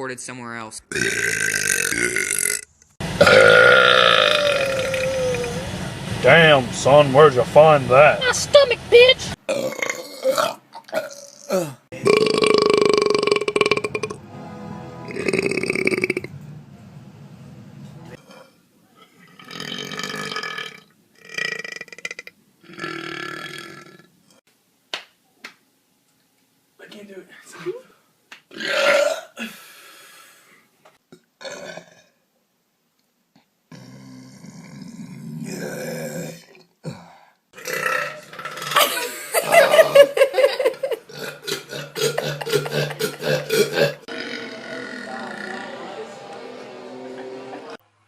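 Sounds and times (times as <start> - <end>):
person belching: 0.9 - 2.6, 3.2 - 5.5, 9.5 - 14.2, 15.1 - 16.3, 19.2 - 24.1, 28.5 - 29.4, 31.1 - 32.2, 33.7 - 40.2, 41.1 - 45.8
person burping: 0.9 - 2.6, 3.2 - 5.4, 9.4 - 14.2, 15.1 - 16.3, 18.2 - 24.1, 28.5 - 29.6, 31.1 - 32.2, 33.7 - 45.8.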